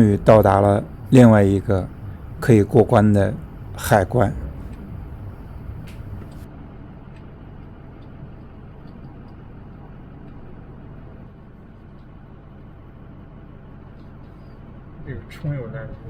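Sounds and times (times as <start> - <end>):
motorhome engine and road noise: 0.0 - 12.2.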